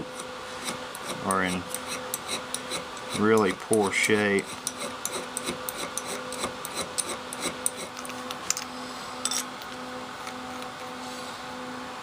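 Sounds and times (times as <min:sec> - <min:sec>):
hand file scraping metal: 0:00.0 - 0:08.0.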